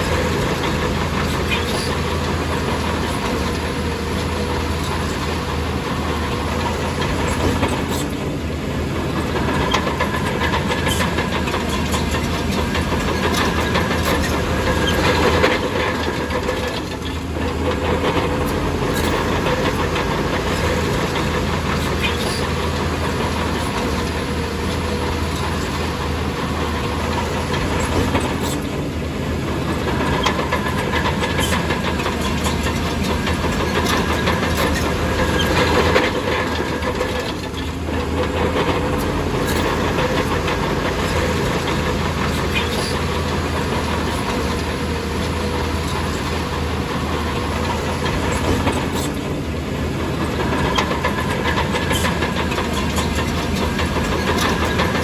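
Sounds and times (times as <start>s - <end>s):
bulldozer diesel engine running: 0.0s - 55.0s
metallic clanks from tracks: 29.5s - 49.4s, 50.0s - 55.0s.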